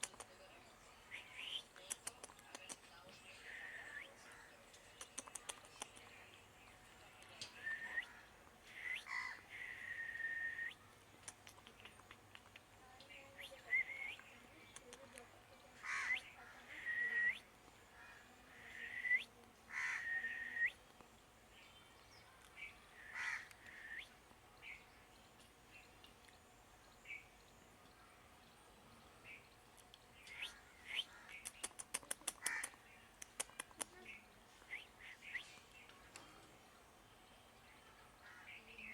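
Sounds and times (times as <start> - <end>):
sharp clicking bird notes: 0.0 - 0.4, 1.1 - 3.0, 4.7 - 6.4, 8.7 - 12.7, 13.4 - 15.3, 29.8 - 36.5
bird chirps: 1.1 - 17.5, 21.5 - 36.5
whistled bird calls: 7.5 - 10.8, 13.4 - 14.3, 15.9 - 17.5, 18.7 - 20.8, 23.7 - 24.2, 34.0 - 35.6.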